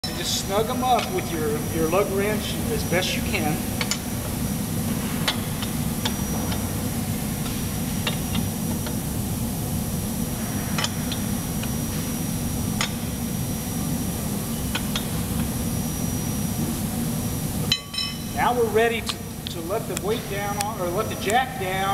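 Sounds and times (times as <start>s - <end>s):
steady low hum: 0.0s - 21.9s
lug wrench clinking on lug nuts: 17.7s - 18.3s.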